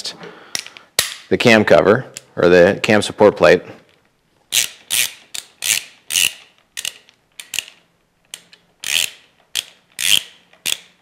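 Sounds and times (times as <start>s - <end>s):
hand ratchet clicking: 4.5s - 11.0s.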